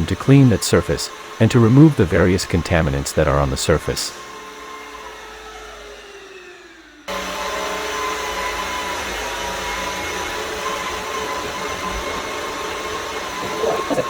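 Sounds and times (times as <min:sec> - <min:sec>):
vacuum cleaner motor whine: 0:00.0 - 0:14.0.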